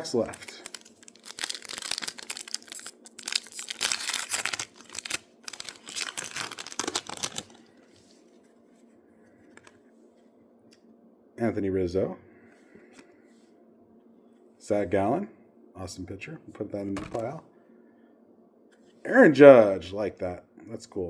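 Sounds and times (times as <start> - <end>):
wrapper tearing and crinkling: 0.0 - 7.7.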